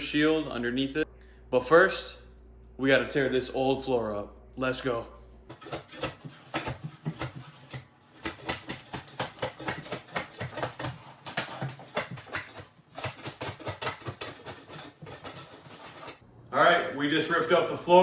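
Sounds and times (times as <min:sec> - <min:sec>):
flooring being torn out: 0:05.5 - 0:16.2.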